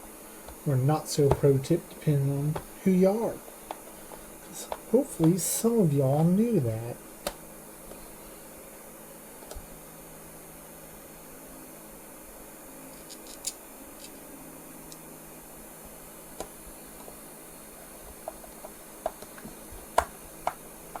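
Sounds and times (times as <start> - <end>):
small screws clicking and tapping: 12.9 - 14.2.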